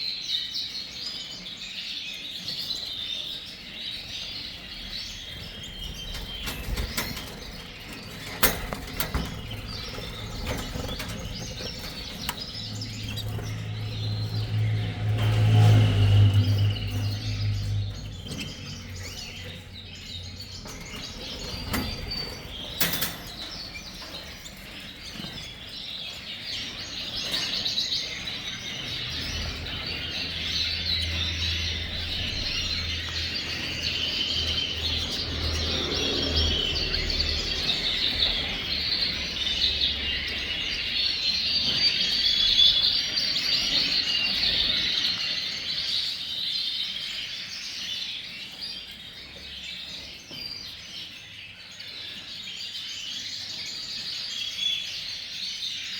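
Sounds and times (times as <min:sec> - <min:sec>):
canaries chirping and twittering: 0:00.0 - 0:55.9
low hum: 0:05.6 - 0:21.8.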